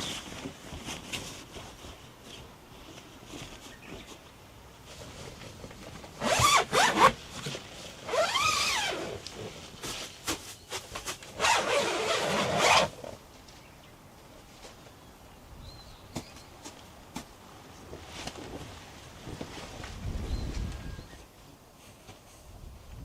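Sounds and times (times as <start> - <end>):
zipper being pulled: 6.2 - 7.2, 8.0 - 9.5, 11.4 - 13.2.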